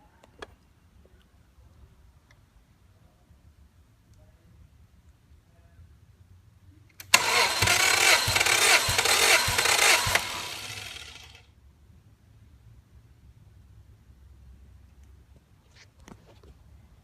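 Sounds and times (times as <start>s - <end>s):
engine cranking by starter motor: 7.0s - 11.4s.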